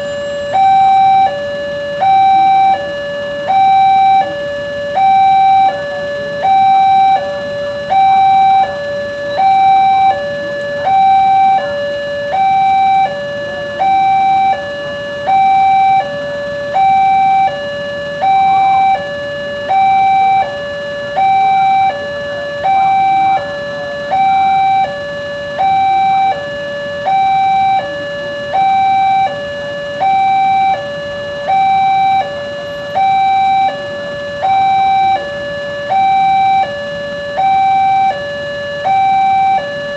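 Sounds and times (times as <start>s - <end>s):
two-tone crossing alarm: 0.0s - 39.9s.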